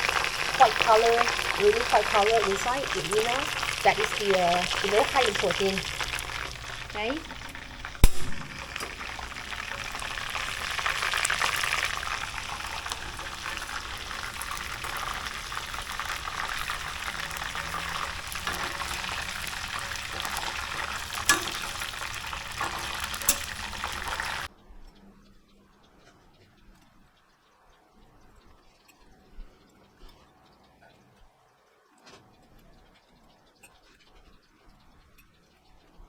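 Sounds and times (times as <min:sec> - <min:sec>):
deep-frying sizzle: 0:00.0 - 0:24.5
sharp clicks: 0:07.5 - 0:14.8.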